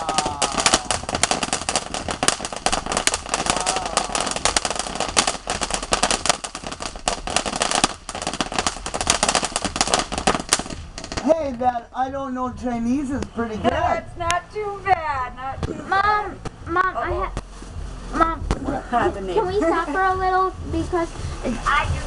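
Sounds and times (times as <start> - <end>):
firework crackling pops: 0.0 - 11.7, 16.4 - 17.8.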